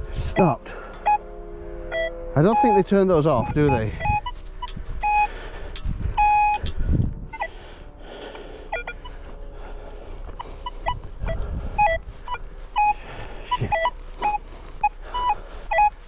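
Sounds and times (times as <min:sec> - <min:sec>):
metal detector beeping: 0:00.0 - 0:16.0
dull low thumps: 0:03.4 - 0:16.0.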